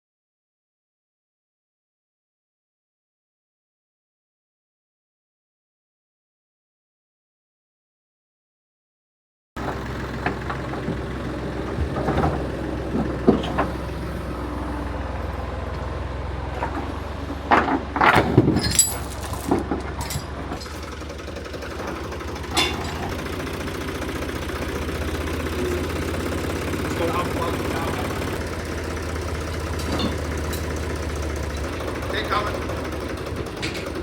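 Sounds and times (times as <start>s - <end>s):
engine idling: 9.6s - 34.0s
clanks and knocks on metal: 16.6s - 20.9s, 21.7s - 23.2s, 29.7s - 30.9s.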